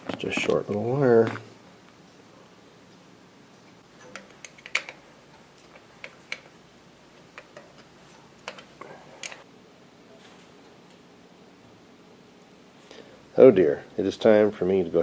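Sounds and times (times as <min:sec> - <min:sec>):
hand tools clicking and tapping: 0:04.0 - 0:06.6, 0:07.2 - 0:09.5.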